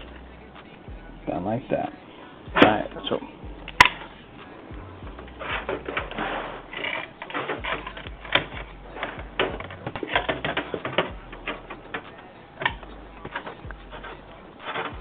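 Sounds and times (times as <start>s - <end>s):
computer parts clicking and knocking: 6.8s - 15.0s.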